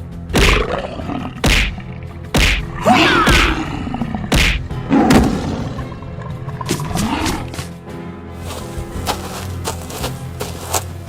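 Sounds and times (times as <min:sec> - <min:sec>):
background music: 0:00.0 - 0:11.0
heavy hits and thuds: 0:04.3 - 0:06.0.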